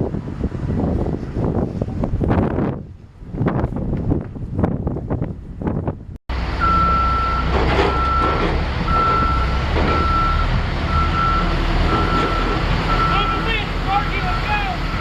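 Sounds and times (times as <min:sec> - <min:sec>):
wind buffeting microphone: 0:00.0 - 0:06.2
reversing alarm beeping: 0:06.6 - 0:13.5.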